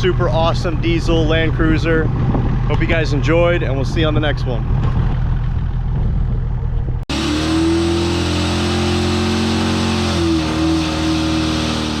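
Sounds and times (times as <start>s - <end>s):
diesel engine rumble: 0.0s - 12.0s.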